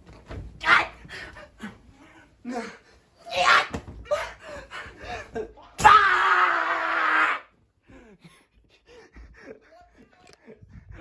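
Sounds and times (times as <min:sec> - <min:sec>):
loud falling scream: 0:05.8 - 0:07.5.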